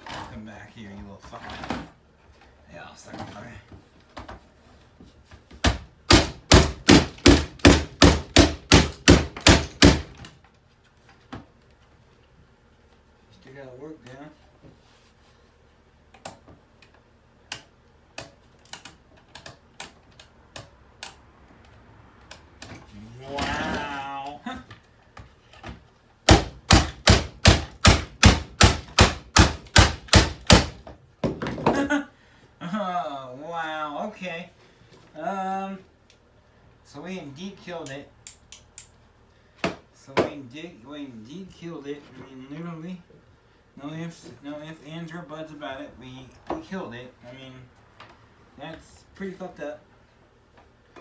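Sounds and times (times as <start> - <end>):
hammer knocking alarm clock: 6.1 - 10.2, 26.3 - 30.8.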